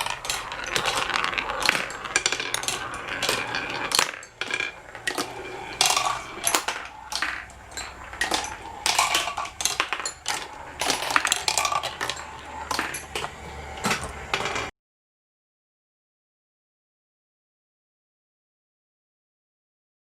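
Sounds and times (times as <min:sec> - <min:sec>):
marbles rolling and clattering: 0:00.0 - 0:14.7.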